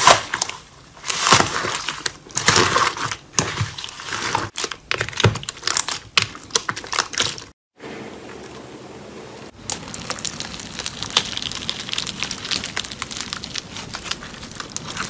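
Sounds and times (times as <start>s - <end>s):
slime crackling and popping: 9.6s - 15.0s.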